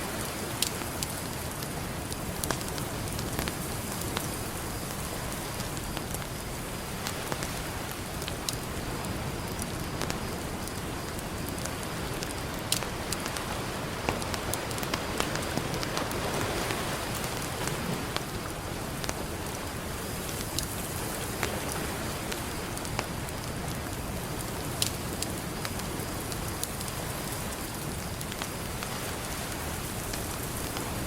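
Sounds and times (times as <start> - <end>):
campfire crackling and popping: 0.0 - 31.0
ocean surf: 12.8 - 20.4.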